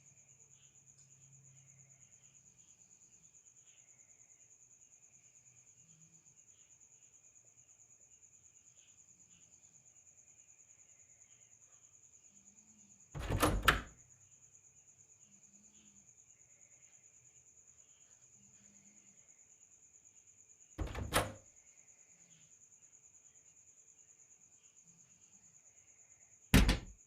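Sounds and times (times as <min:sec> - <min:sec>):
faint insects chirping: 0:00.0 - 0:27.0
loud knock: 0:26.6 - 0:26.9.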